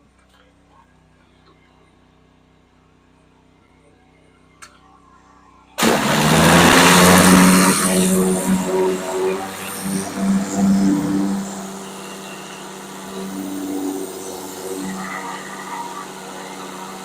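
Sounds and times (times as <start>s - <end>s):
click: 4.6s - 4.8s
engine-driven machine hissing: 5.8s - 17.0s.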